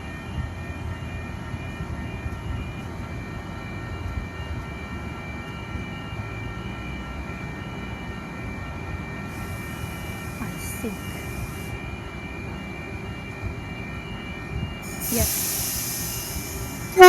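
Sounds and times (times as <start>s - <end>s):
train rumble: 0.0s - 17.0s
high whining tones: 9.3s - 12.0s, 14.8s - 17.0s.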